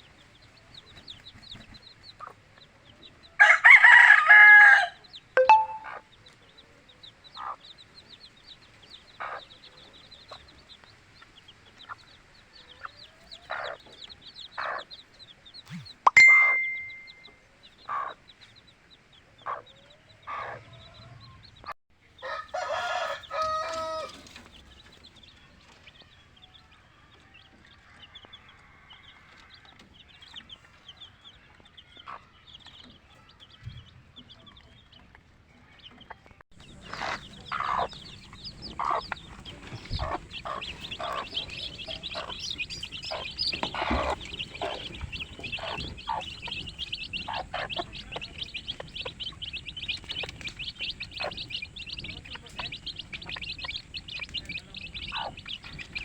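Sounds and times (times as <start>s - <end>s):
chickens clucking: 0.0s - 56.0s
chicks peeping: 0.0s - 56.0s
rooster crowing: 3.4s - 5.0s, 22.2s - 24.2s.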